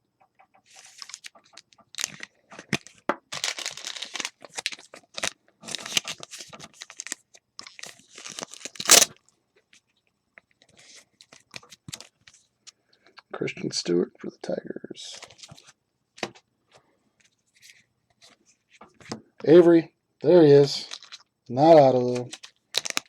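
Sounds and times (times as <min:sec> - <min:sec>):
cards rustling and clicking: 0:00.7 - 0:09.1, 0:22.0 - 0:23.0
card pack wrapper tearing: 0:02.0 - 0:09.2, 0:20.8 - 0:21.2, 0:22.1 - 0:23.0.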